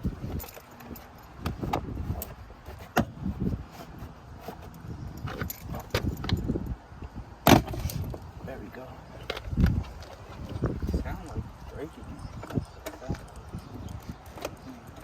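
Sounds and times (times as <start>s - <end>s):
hand tools clicking and clinking: 0.2s - 3.0s, 4.6s - 6.7s, 9.2s - 15.0s.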